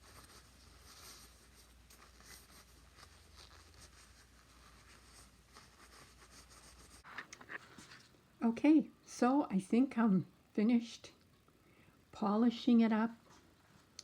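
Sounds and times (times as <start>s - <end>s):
cloth rubbing on metal: 0.0s - 8.0s.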